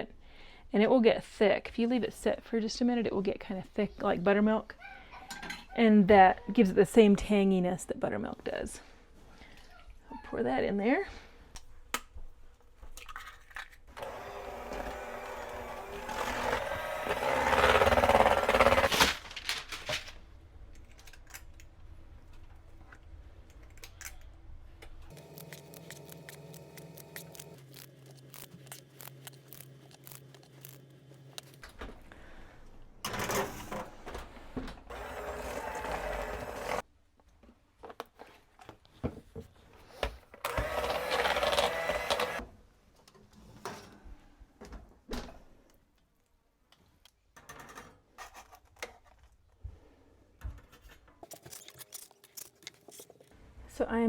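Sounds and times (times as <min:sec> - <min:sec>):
electric hand mixer beating batter: 0:14.0 - 0:18.9, 0:34.9 - 0:36.8, 0:40.5 - 0:42.4.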